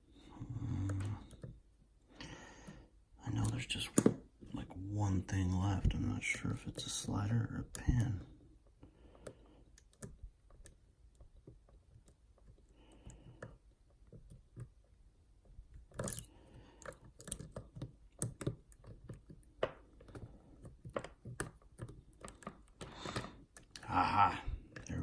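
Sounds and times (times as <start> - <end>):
lock pick clicks and scrapes: 15.9 - 23.8.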